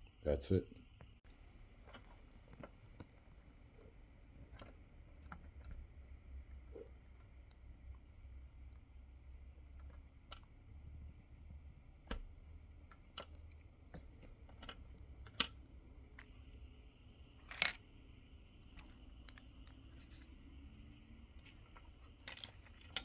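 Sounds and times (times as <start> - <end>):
low steady hum: 0.0 - 23.0
connectors clicking and snapping: 12.0 - 23.0.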